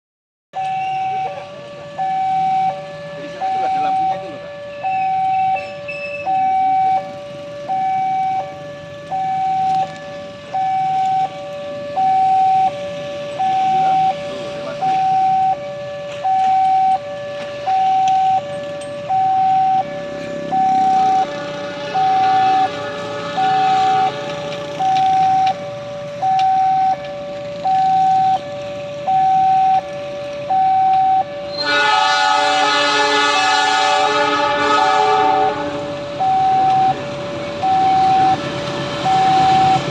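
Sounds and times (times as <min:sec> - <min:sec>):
level crossing electronic alarm: 0:00.6 - 0:39.9
locomotive horn blast: 0:20.1 - 0:24.8, 0:31.2 - 0:37.5.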